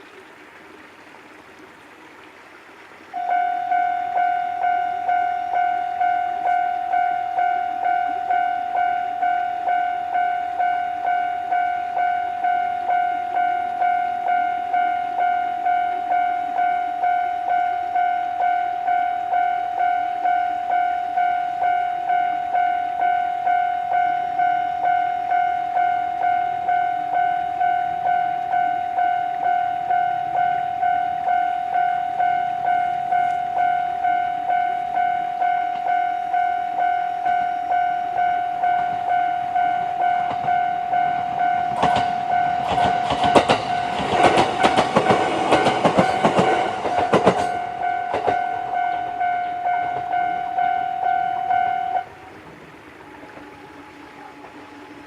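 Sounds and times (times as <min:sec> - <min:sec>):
level crossing warning bell: 0:03.2 - 0:52.3
train wheels clattering over rails: 0:39.8 - 0:50.3.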